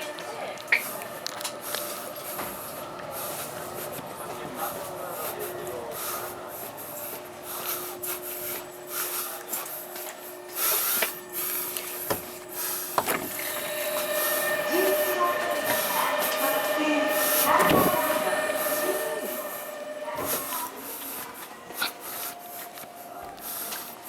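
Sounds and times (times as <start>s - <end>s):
high steady motor tones: 0.0s - 24.0s
train electrical hum: 0.0s - 24.0s
air hissing: 0.6s - 24.0s.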